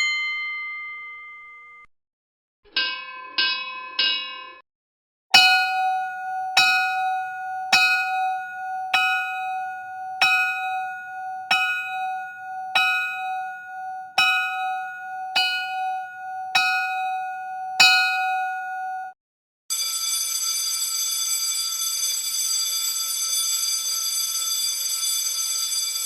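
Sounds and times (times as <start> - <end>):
level crossing warning bell: 5.4 - 19.1, 19.7 - 26.0.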